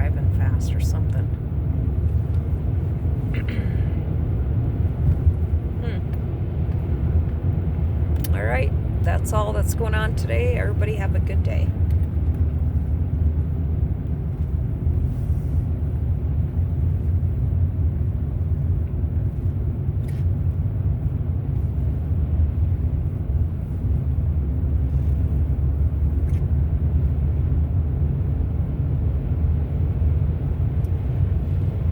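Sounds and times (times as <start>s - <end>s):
car engine and tyre rumble: 0.0s - 31.9s.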